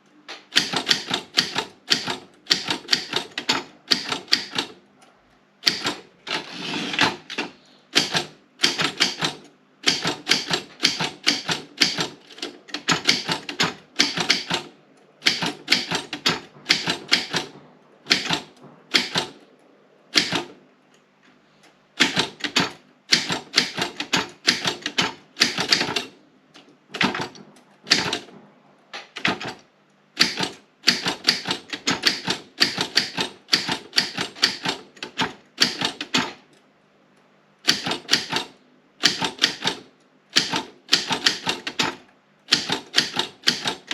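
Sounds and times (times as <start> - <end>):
typewriter keys clacking: 5.6 - 19.4, 22.0 - 26.1, 29.0 - 29.6, 30.2 - 36.4, 37.7 - 39.8, 40.4 - 43.9.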